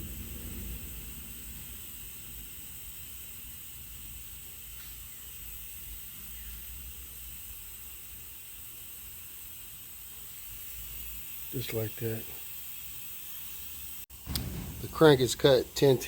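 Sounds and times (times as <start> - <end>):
steady background hiss: 0.0 - 16.0
low hum: 14.2 - 16.0.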